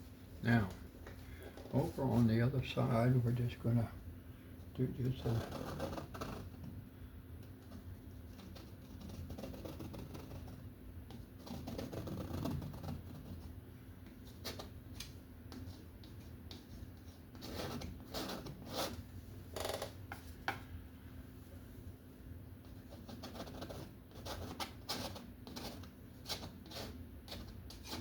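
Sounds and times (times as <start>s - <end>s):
paint scraping on canvas: 15.6s - 19.0s, 22.7s - 28.0s.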